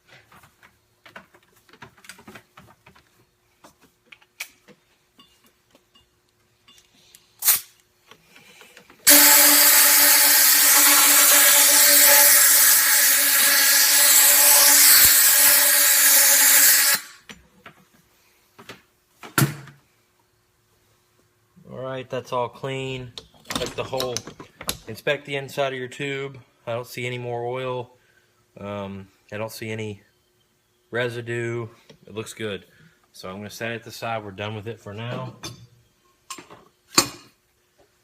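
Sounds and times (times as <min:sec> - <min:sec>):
loud air hiss with tone: 0:07.3 - 0:07.8, 0:09.0 - 0:17.2
compressed air blasts: 0:07.4 - 0:07.8.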